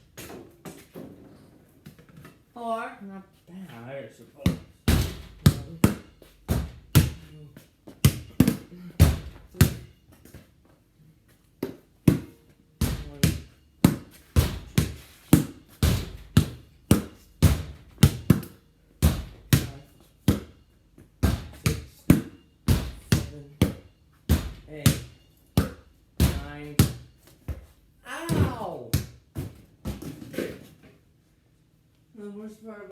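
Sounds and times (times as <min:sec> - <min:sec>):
basketball thudding against garage door: 0:04.5 - 0:10.0, 0:11.6 - 0:30.6.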